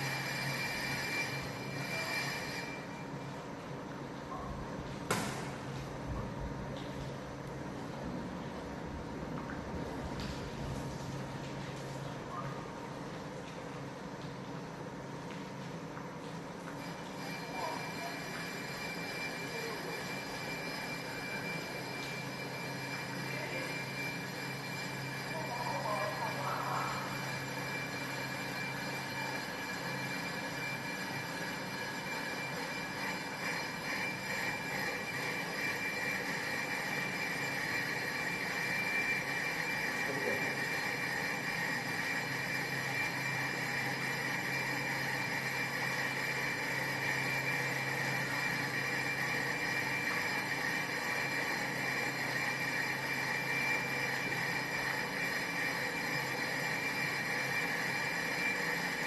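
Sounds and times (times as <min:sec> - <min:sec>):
brake lathe running: 0:00.0 - 0:02.9
high whine: 0:00.0 - 0:03.5.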